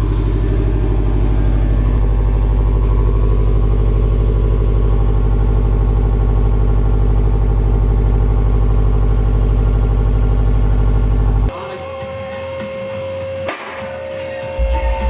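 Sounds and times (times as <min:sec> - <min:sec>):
car engine idling: 0:00.0 - 0:11.5.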